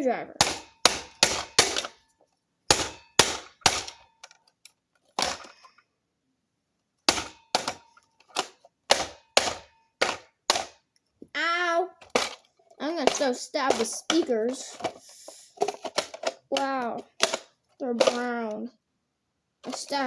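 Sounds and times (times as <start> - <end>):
screwdriver striking plastic: 0.4 - 2.1, 2.7 - 4.5, 5.2 - 5.6, 7.1 - 10.8, 12.0 - 15.0, 15.6 - 18.5.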